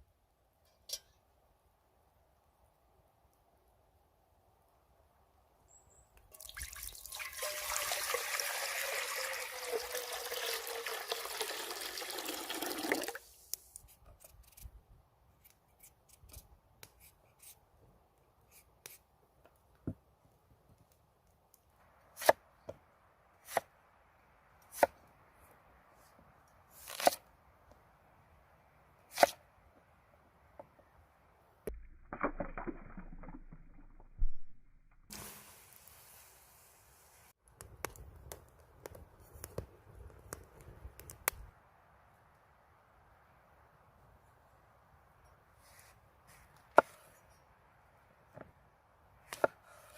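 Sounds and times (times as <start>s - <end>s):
water pouring: 6.3s - 13.3s, 32.0s - 34.2s.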